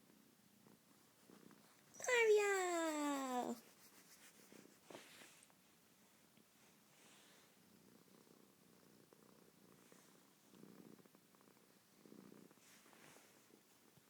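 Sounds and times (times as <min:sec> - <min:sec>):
cat snoring faintly: 0:06.9 - 0:13.6.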